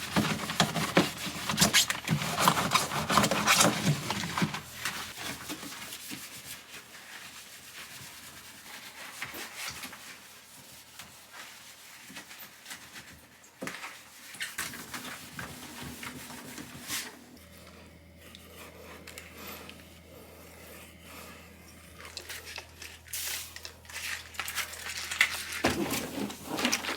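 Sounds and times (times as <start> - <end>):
rubbing and wiping: 0.0 - 26.9
low steady hum: 14.8 - 26.9.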